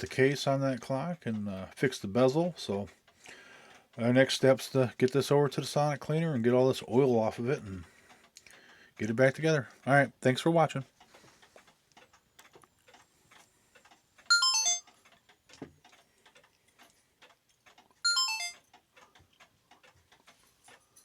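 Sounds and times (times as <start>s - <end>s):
clocks ticking: 0.1s - 21.0s
bright jingle of stepping tones: 14.3s - 14.9s, 18.0s - 18.6s.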